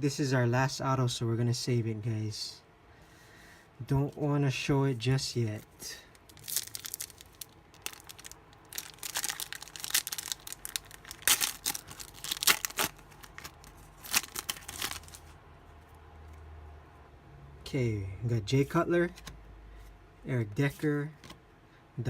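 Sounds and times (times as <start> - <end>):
wrapper tearing and crinkling: 6.2 - 15.4.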